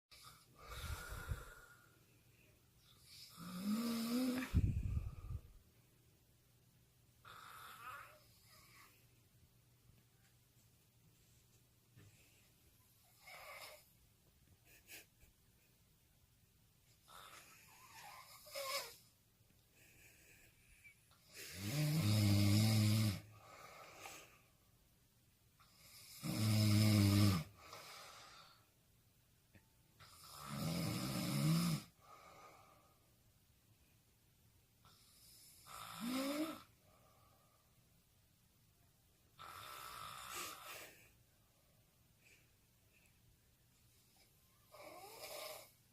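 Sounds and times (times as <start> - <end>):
person snoring: 0.1 - 1.9, 3.0 - 5.4, 17.0 - 19.0, 21.2 - 24.3, 25.6 - 28.6, 30.0 - 32.8, 34.9 - 36.7, 39.4 - 41.1, 44.7 - 45.8.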